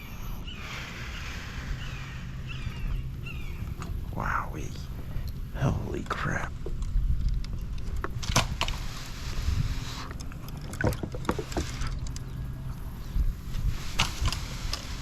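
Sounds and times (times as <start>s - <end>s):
low steady rumble: 0.0s - 15.0s
soft rushing hiss: 8.2s - 10.6s, 11.2s - 15.0s.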